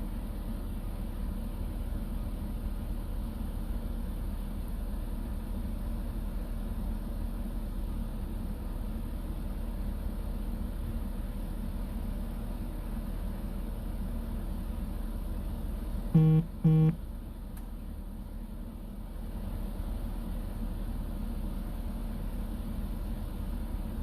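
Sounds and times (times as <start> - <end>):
short loud beeps: 16.2 - 17.0.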